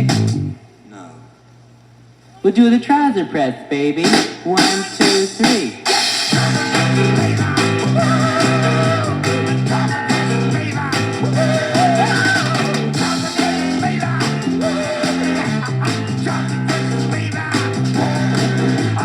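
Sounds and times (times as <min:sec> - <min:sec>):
bass and guitar riff: 0:00.0 - 0:00.6, 0:06.3 - 0:19.0
rock band playing instrumental: 0:04.6 - 0:19.0.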